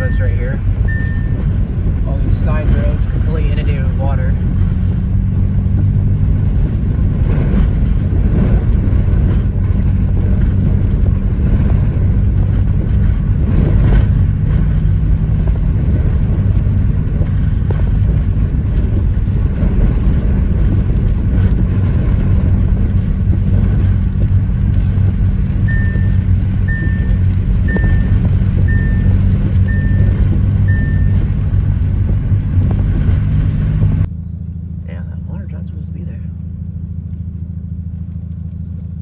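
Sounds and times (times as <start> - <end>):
high electronic beep: 0.0 - 1.5, 25.7 - 31.4
wind gusts buffeting vehicle: 0.0 - 34.2
low engine hum: 0.0 - 39.0.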